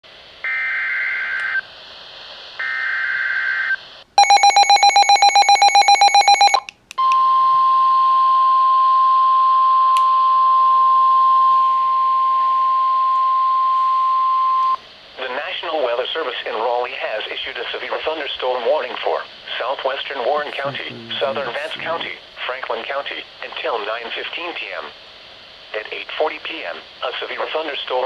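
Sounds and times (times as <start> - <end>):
steady warning alarm tone: 3.4 - 6.6.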